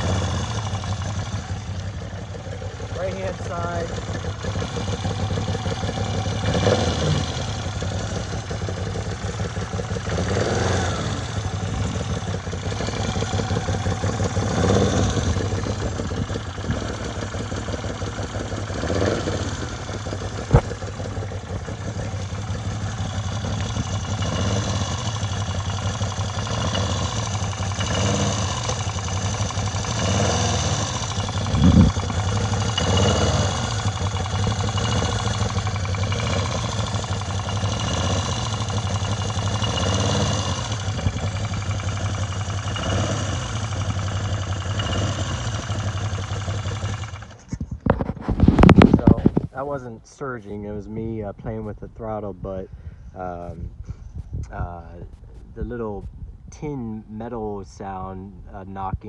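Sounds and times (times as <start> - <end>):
motorcycle engine idling: 0.0 - 59.0
thump: 20.4 - 20.9.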